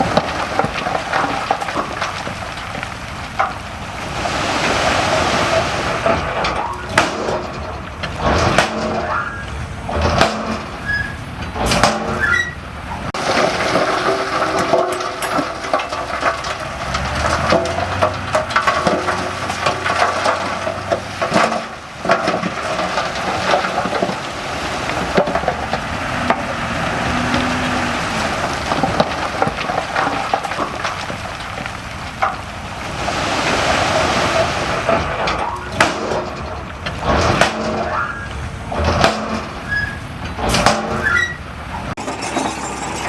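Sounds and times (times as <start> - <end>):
soil and stones shifting: 0.0 - 43.0
machinery engine running: 42.0 - 43.0.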